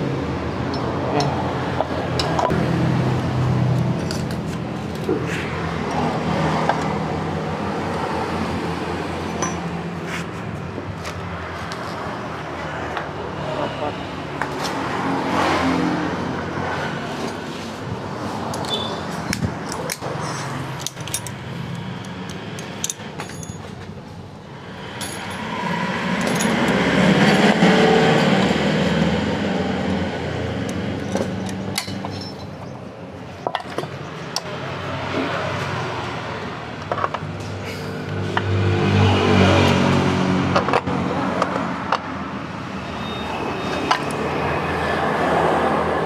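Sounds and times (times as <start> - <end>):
passing road traffic: 0.0 - 46.0
motor vehicle passing: 1.1 - 23.9, 24.5 - 32.7, 34.0 - 41.8
small metal parts clinking: 19.6 - 23.8, 24.9 - 27.4, 31.0 - 32.6.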